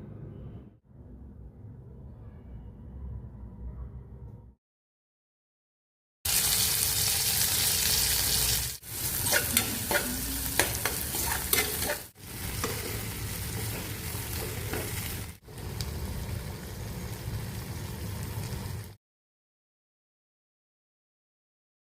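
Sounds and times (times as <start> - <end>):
okra sizzling in a pan: 6.3 - 19.0
spatula scraping a pan: 8.9 - 15.3.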